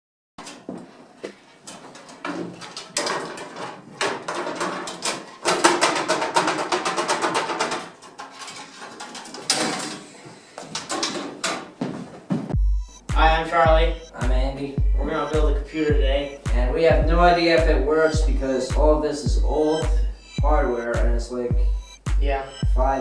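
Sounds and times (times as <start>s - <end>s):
hard objects clattering: 2.1s - 10.0s.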